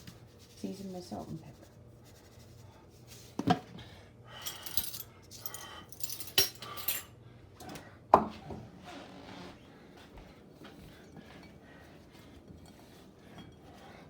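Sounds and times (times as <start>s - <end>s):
utensils and dishes clinking: 4.4s - 7.8s, 10.8s - 14.0s.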